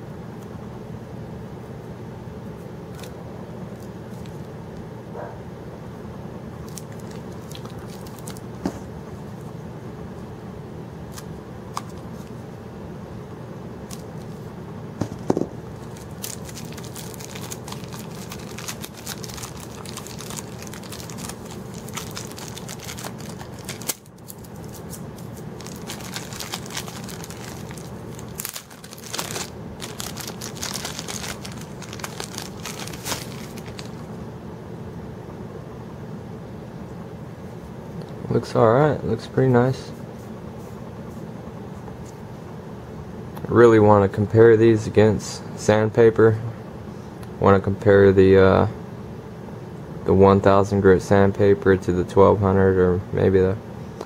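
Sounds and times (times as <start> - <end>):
steady background hum: 0.0 - 54.0
packaging crinkling and tearing: 6.6 - 8.4, 13.8 - 14.4, 15.7 - 34.1.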